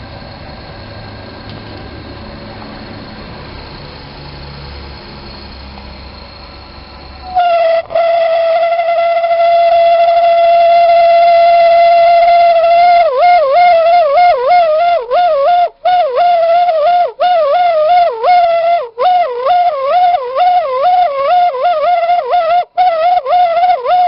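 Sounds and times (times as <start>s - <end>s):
heater whistling tone: 0.0s - 24.0s.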